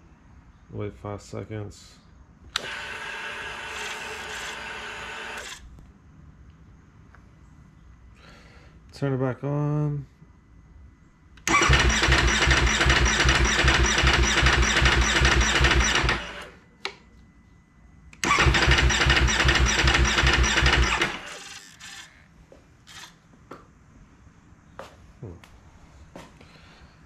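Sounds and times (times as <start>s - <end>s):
motorcycle starter cranking engine: 11.4s - 16.5s, 18.2s - 22.2s.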